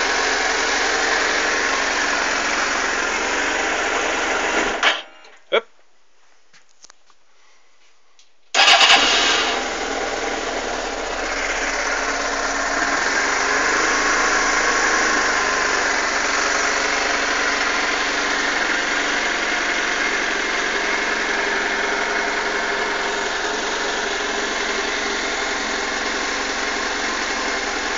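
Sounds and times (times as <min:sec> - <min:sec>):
motorcycle engine idling roughly: 0:09.7 - 0:27.9.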